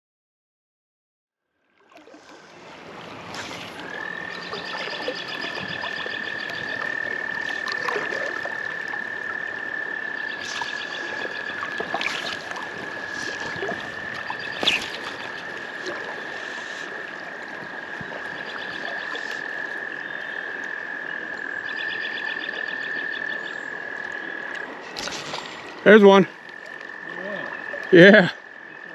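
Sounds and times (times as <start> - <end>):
running water: 1.7 - 28.9
frogs pulsing calls: 2.2 - 28.9
frog high steady trill: 3.4 - 28.9.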